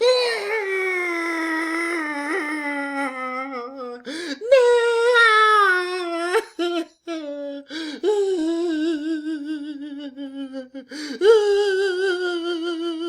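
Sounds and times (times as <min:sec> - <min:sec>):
man crying: 0:00.0 - 0:13.0
sharp gasping breath: 0:04.1 - 0:04.4.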